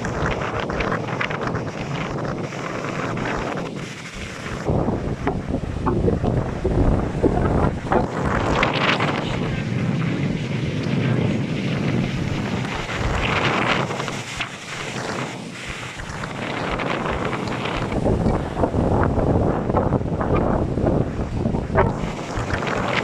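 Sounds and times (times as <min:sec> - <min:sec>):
gusty wind on microphone: 0:00.0 - 0:23.0
surf breaking in waves: 0:00.0 - 0:23.0.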